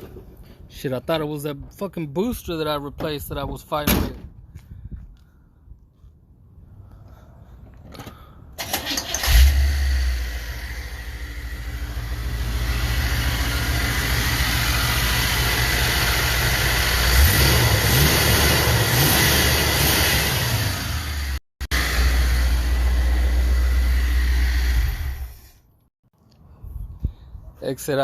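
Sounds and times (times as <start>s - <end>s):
car engine cranking and starting: 8.1s - 25.5s
car engine idling: 8.8s - 25.0s.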